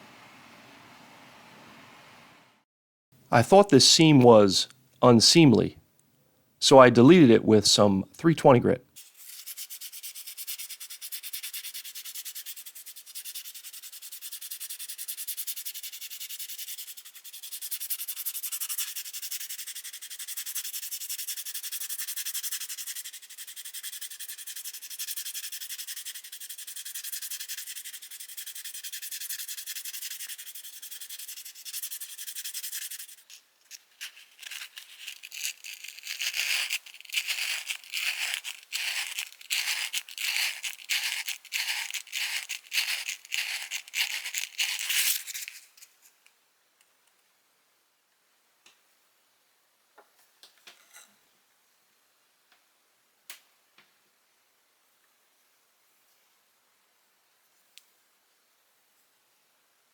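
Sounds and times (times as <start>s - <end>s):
sandpaper scratching plastic: 9.0s - 45.9s.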